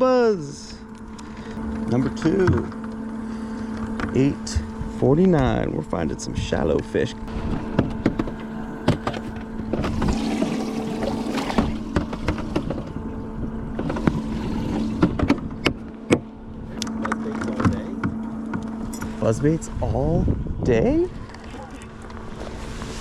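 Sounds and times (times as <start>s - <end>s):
boat motor humming: 0.0s - 23.0s
clicks and knocks on boat: 11.5s - 12.9s, 15.0s - 19.1s.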